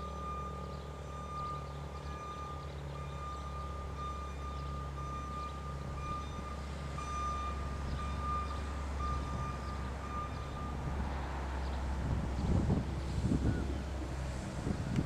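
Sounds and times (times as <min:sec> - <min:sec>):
warning siren high tone: 0:00.0 - 0:10.9.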